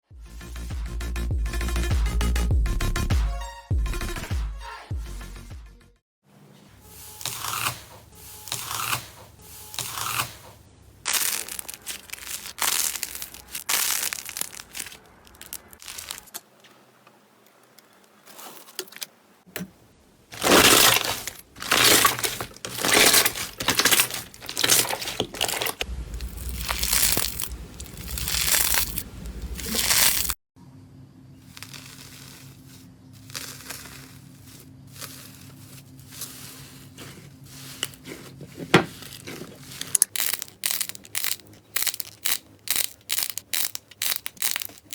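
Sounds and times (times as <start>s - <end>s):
slime crackling when squeezed: 11.1s - 16.4s, 20.4s - 30.4s, 39.9s - 44.9s.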